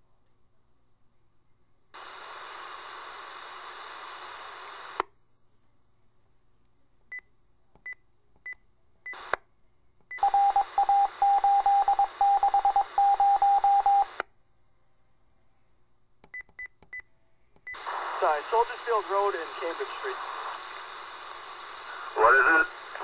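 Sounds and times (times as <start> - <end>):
hissing radio transmission: 2.0 - 5.0, 17.8 - 23.0.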